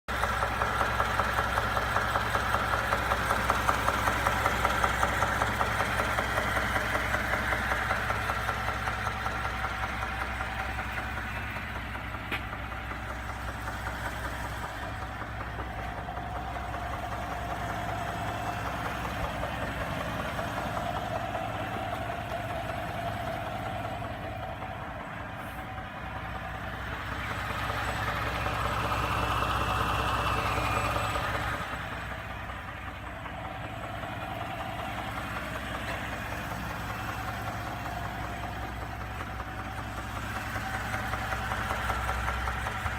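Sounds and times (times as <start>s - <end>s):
engine idling with rhythmic knock: 0.1s - 42.9s.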